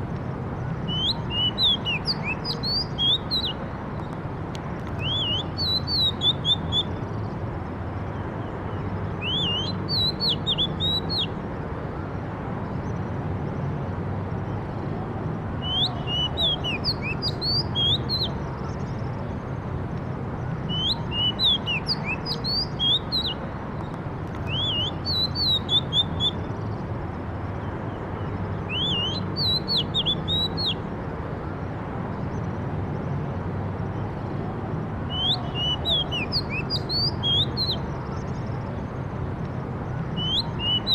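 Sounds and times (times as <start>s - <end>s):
songbird chirping and whistling: 0.8s - 3.7s, 5.0s - 7.0s, 9.2s - 11.4s, 15.6s - 18.8s, 20.7s - 23.5s, 24.4s - 26.6s, 28.7s - 30.8s, 35.1s - 38.3s, 40.1s - 40.9s.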